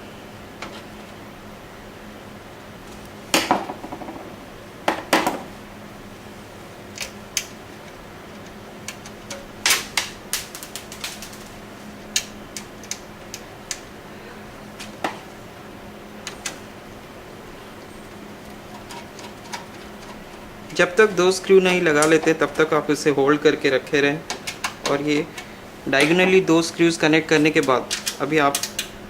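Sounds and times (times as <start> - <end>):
metal clicks and clatter: 18.4 - 20.5, 24.3 - 26.4, 27.3 - 29.0.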